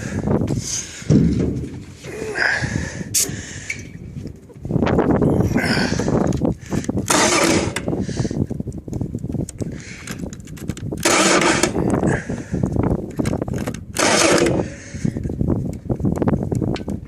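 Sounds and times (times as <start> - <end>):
diesel engine cranking: 5.5 - 8.4, 9.5 - 15.3.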